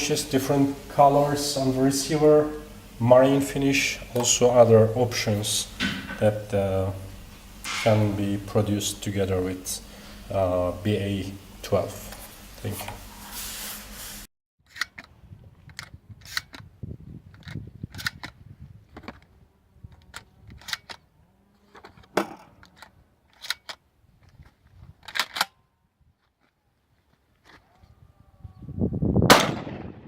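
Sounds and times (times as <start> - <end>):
short hiss: 12.0 - 14.3
shotgun mechanical clicks: 24.4 - 25.6.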